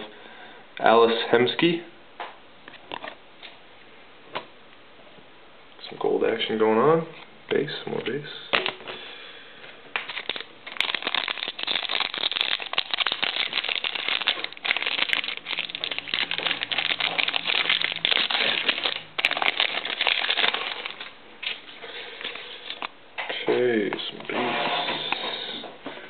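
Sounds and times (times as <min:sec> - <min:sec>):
wrapper crinkling and tearing: 0:10.0 - 0:21.6.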